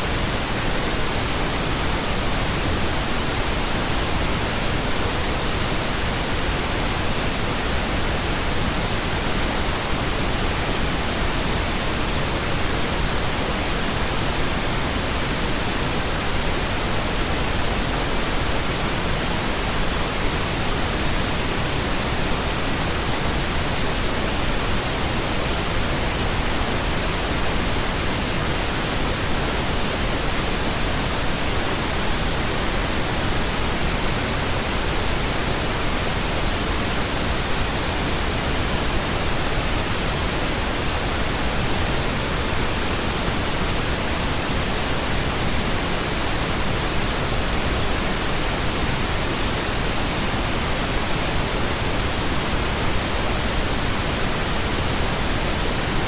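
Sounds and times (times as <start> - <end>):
steady pink noise hiss: 0.0 - 56.0.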